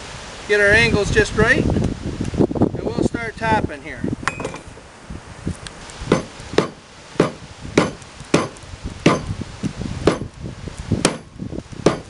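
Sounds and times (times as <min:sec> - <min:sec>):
hammer knocking on wood: 0:06.1 - 0:09.3, 0:10.0 - 0:10.3, 0:11.0 - 0:12.0.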